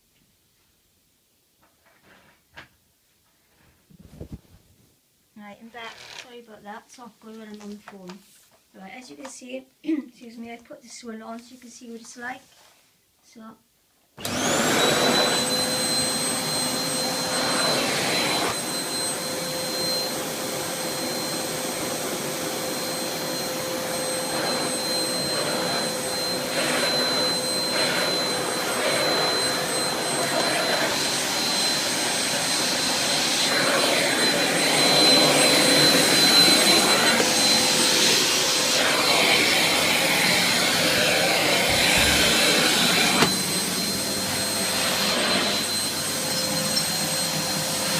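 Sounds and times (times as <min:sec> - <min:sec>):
vacuum cleaner running: 0:14.2 - 0:47.9.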